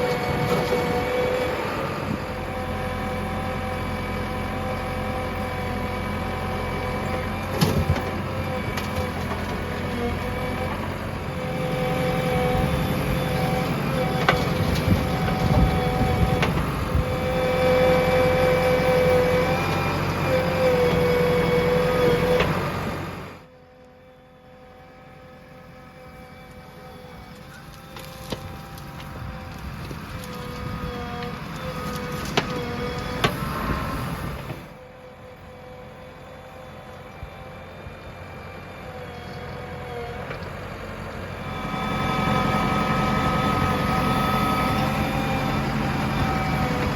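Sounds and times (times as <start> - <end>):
diesel engine running under load: 0.0 - 46.9
engine whine: 0.0 - 46.9.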